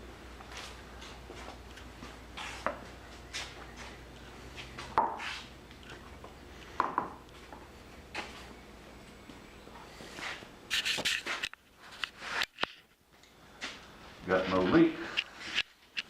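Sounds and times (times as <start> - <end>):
faint rubbing and handling: 9.9 - 12.9.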